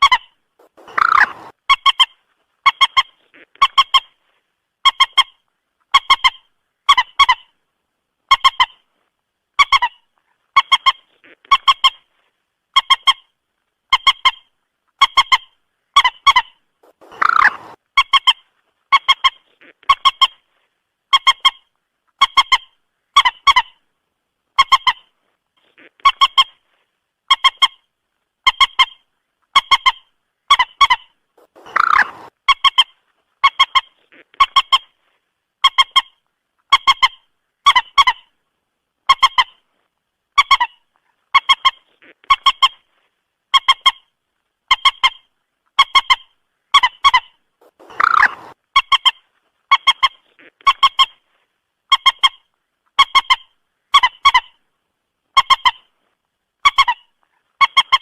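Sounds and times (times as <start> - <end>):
moorhen honking calls: 0.0 - 1.6, 16.0 - 17.8, 30.8 - 32.3, 47.6 - 48.6
harsh moorhen call: 0.0 - 2.0, 16.0 - 18.3, 30.5 - 32.8, 46.8 - 49.0.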